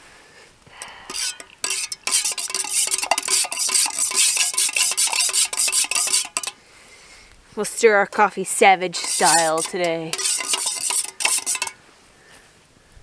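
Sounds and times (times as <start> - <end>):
stick stirring coffee in cup: 0.8 - 6.6, 8.5 - 11.8.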